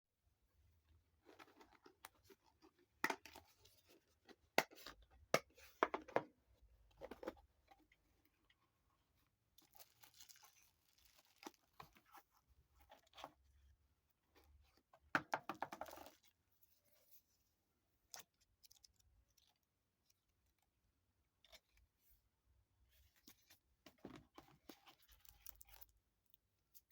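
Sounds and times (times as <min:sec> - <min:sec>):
packaging rustling and tearing: 0:09.6 - 0:11.7.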